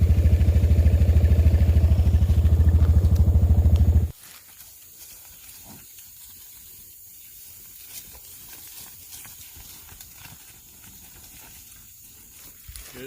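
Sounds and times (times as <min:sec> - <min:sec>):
low rumble: 0:00.0 - 0:04.1
cattle moving about: 0:00.2 - 0:13.0.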